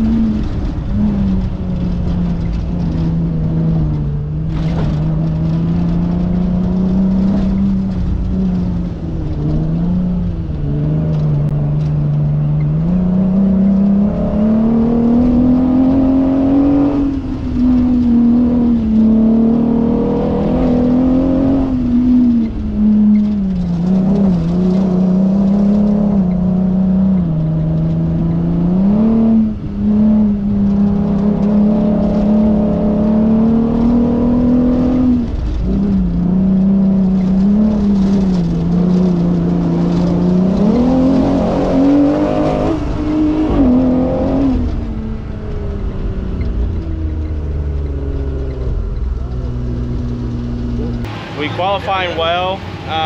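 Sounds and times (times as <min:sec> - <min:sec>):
race vehicle engine revving: 0:00.0 - 0:53.0.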